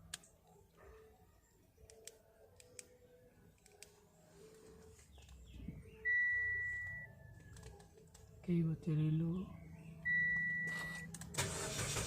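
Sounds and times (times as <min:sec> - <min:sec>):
electronic beep: 0:05.9 - 0:07.6, 0:10.0 - 0:11.1.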